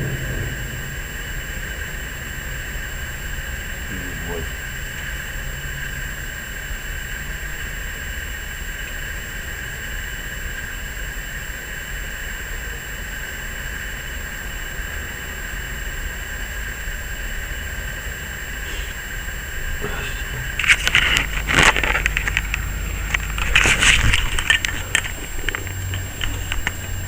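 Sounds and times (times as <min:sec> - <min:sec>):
low rumble: 0:00.0 - 0:05.9, 0:19.7 - 0:27.0
high even whine: 0:00.0 - 0:11.0, 0:16.0 - 0:27.0.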